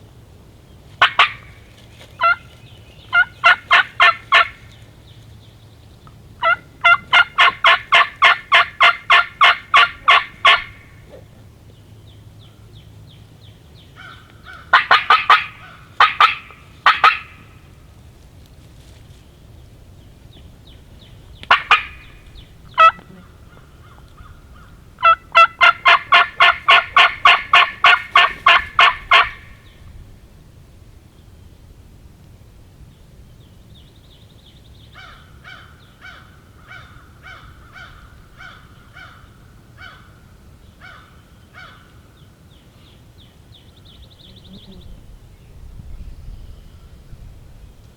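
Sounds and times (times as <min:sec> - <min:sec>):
wild turkey yelping: 0:01.0 - 0:01.6, 0:02.2 - 0:04.7, 0:06.4 - 0:11.3, 0:14.0 - 0:17.6, 0:21.4 - 0:29.6, 0:35.0 - 0:40.2.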